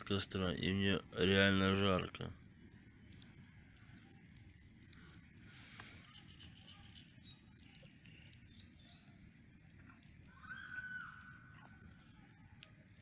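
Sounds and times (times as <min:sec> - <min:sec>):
campfire crackling: 0:00.0 - 0:13.0
faint animal calls: 0:10.2 - 0:12.4.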